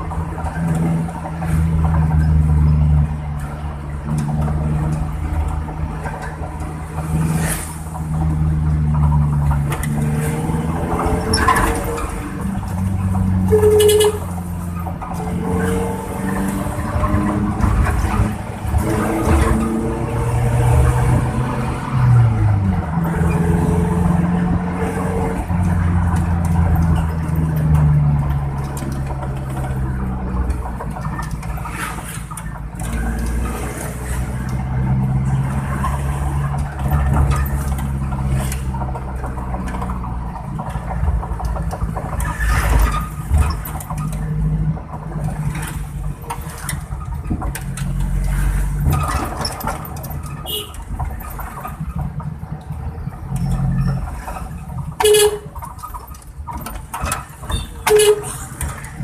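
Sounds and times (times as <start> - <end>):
engine revving deep exhaust: 15.1 - 30.6.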